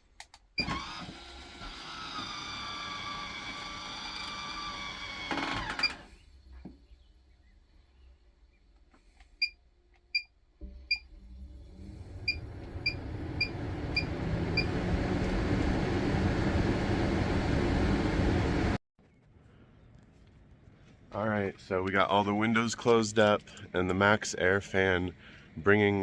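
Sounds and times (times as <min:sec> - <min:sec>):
vent fan motor rushing: 0:00.6 - 0:06.3, 0:11.1 - 0:18.8.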